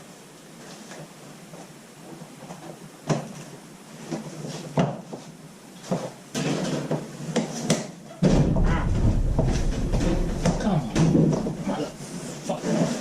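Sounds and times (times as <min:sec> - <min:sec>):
loud thump: 0:08.2 - 0:11.9
shelving parts knocking: 0:08.2 - 0:12.0.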